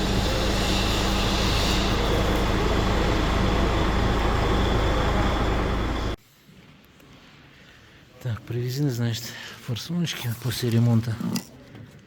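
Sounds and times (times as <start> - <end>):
machine humming with hiss: 0.0 - 6.2.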